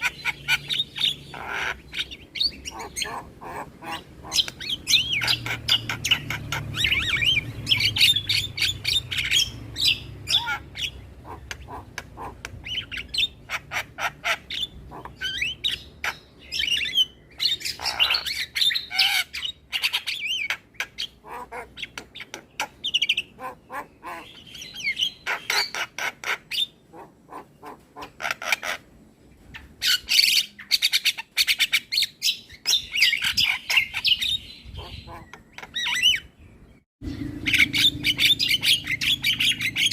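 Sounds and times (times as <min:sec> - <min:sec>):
low hum: 0:37.0 - 0:39.7.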